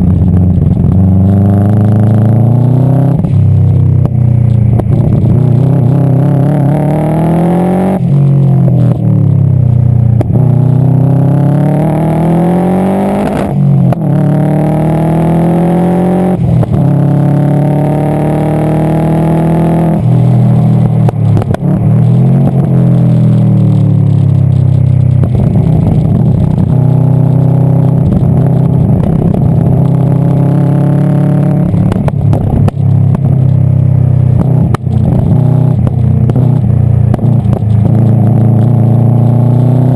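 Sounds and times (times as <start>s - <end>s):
car engine accelerating hard: 0.0s - 39.9s
exhaust crackles off throttle: 16.1s - 39.9s.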